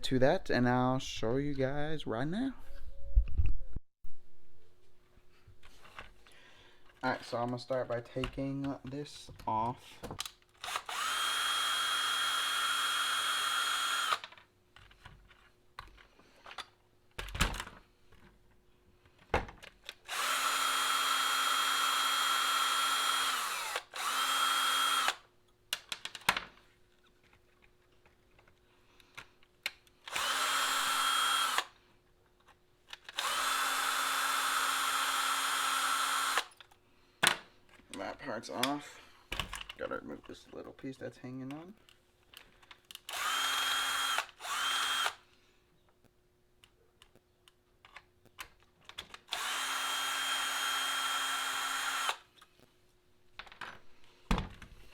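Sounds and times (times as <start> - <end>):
electric screwdriver whining: 10.6 - 14.3, 20.0 - 25.2, 30.1 - 31.7, 33.1 - 36.5, 43.1 - 45.2, 49.2 - 52.3
small clicks and handling knocks: 25.7 - 30.0, 38.6 - 40.4, 45.9 - 49.2, 53.4 - 54.8.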